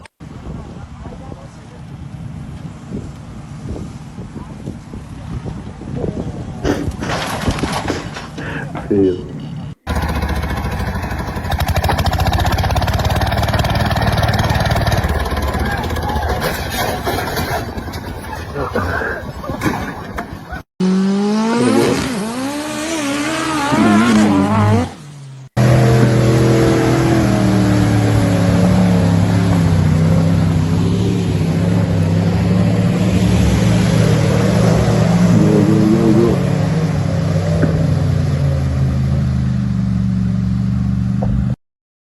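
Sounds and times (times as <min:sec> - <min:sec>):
off-road vehicle engine revving: 0:06.7 - 0:17.6, 0:20.8 - 0:41.4
engine running steadily: 0:08.4 - 0:16.5.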